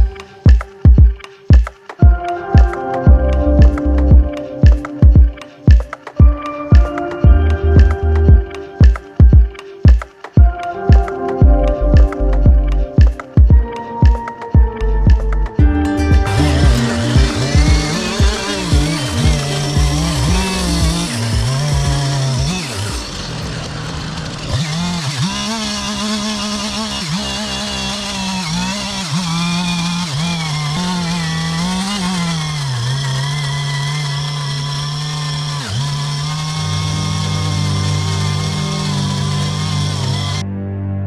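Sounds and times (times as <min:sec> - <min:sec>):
chainsaw cutting wood: 0:14.2 - 0:40.4.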